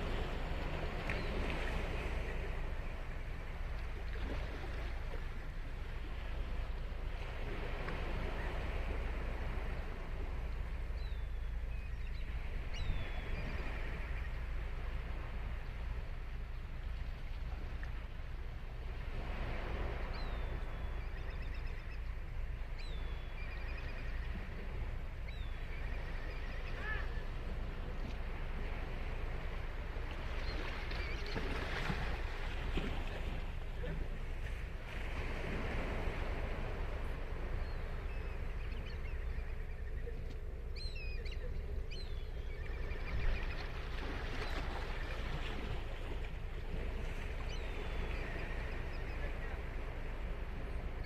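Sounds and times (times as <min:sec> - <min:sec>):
ocean surf washing onto beach: 0:00.0 - 0:10.9
ocean surf: 0:00.0 - 0:11.6, 0:12.3 - 0:40.8, 0:42.7 - 0:51.0.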